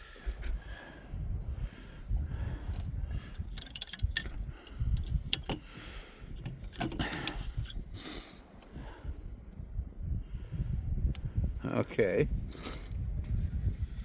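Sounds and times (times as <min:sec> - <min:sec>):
wind rumble on microphone: 0:00.0 - 0:14.0
metal hand tools clinking: 0:12.5 - 0:12.9.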